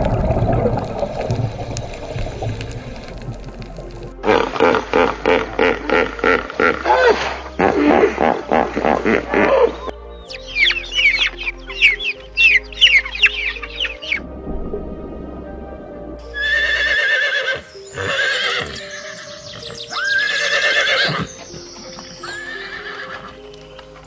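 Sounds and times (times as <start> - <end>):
background music with held notes: 0.0 - 24.0
horses neighing: 4.2 - 9.9, 16.3 - 23.6.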